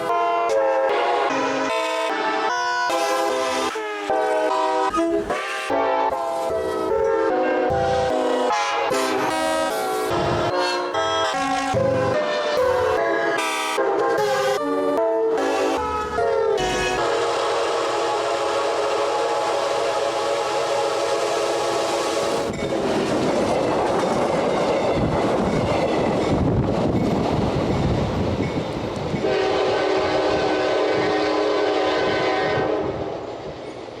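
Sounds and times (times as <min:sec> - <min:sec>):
locomotive air horn: 0:00.0 - 0:22.5, 0:29.2 - 0:33.2
train wheels clattering: 0:22.4 - 0:29.5.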